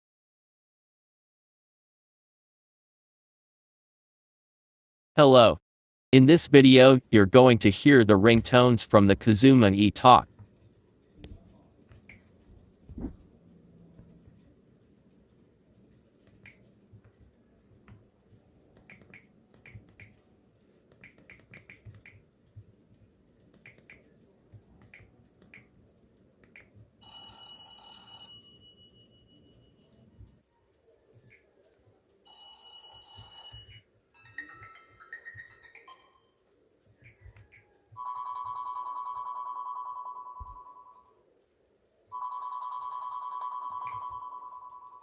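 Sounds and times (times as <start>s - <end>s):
electronic ringtone: 32.3s - 36.5s, 37.9s - 41.2s, 42.1s - 45.0s.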